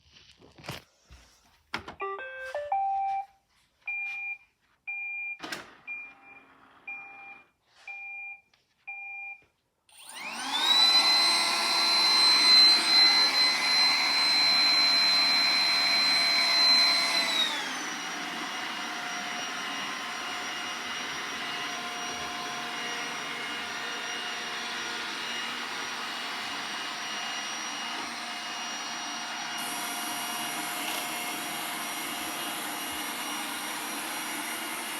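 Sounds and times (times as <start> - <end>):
robot vacuum motor whine: 9.9 - 34.9.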